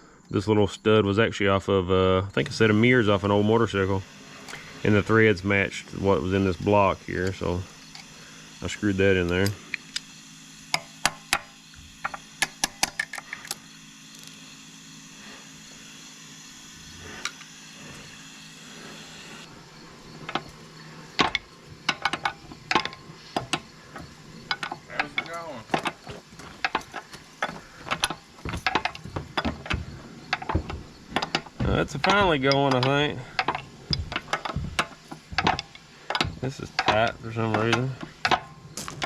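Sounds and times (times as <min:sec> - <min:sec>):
metal tools clicking and clanking: 0:02.8 - 0:10.1, 0:10.7 - 0:14.4, 0:19.9 - 0:39.0.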